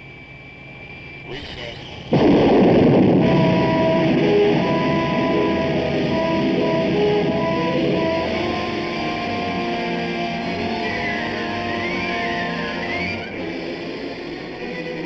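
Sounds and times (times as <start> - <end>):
rocket engine roar: 0.0 - 15.0
held tones: 0.3 - 15.0
loud explosion blast: 1.9 - 8.9.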